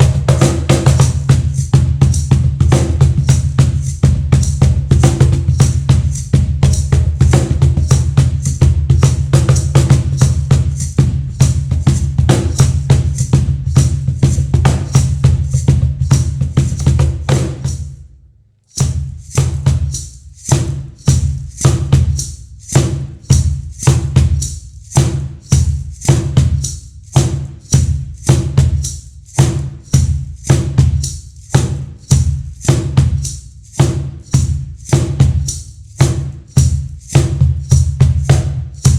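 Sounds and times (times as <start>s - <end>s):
cajon played by hand: 0.0s - 17.8s.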